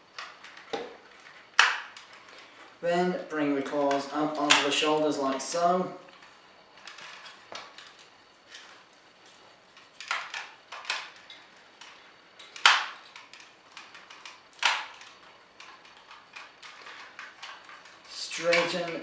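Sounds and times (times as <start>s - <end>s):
plastic toy parts clicking: 0.1s - 2.4s, 3.7s - 5.4s, 6.1s - 19.0s.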